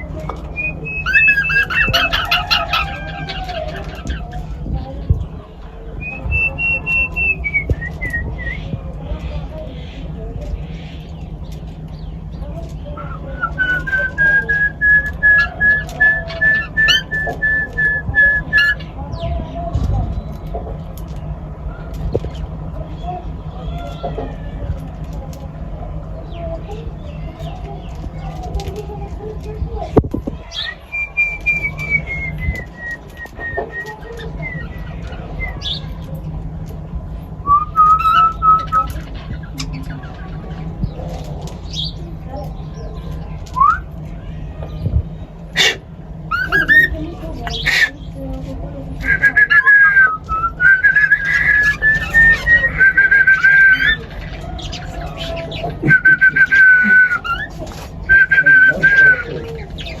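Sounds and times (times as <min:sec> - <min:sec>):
cockatiel whistling: 0:00.6 - 0:02.9, 0:13.1 - 0:18.8, 0:37.4 - 0:38.9, 0:45.6 - 0:47.0, 0:49.0 - 0:54.0, 0:55.8 - 0:57.5.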